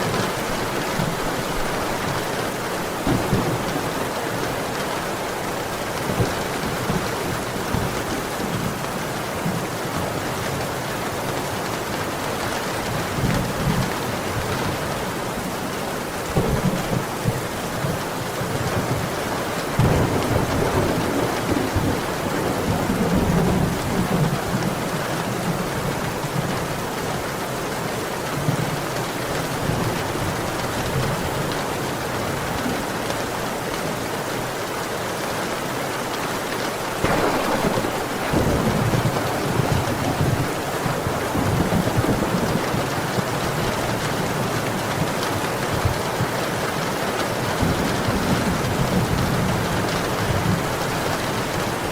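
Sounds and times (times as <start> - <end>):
thunder rumbling: 0.0 - 7.9, 19.7 - 25.0, 37.0 - 44.7
heavy rain downpour: 0.0 - 51.9.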